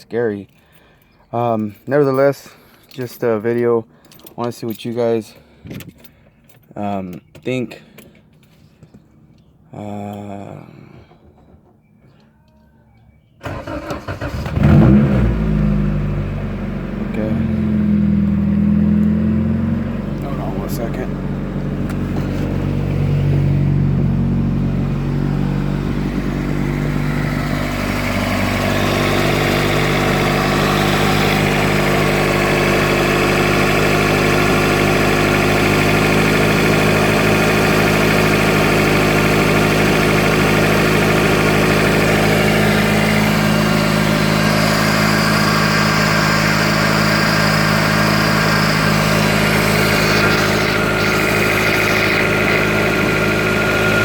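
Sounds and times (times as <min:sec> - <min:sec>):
car engine running: 0:13.5 - 0:54.0.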